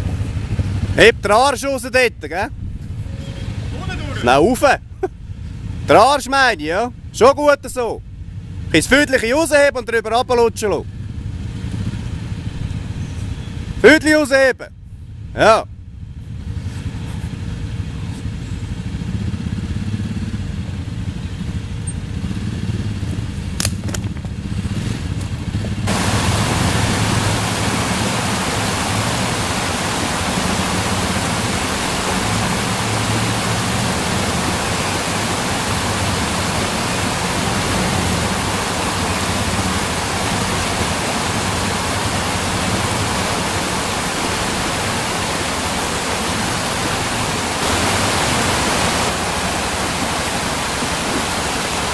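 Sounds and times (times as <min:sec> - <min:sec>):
vehicle engine running: 0:00.0 - 0:51.9
loud even hiss: 0:25.9 - 0:51.9.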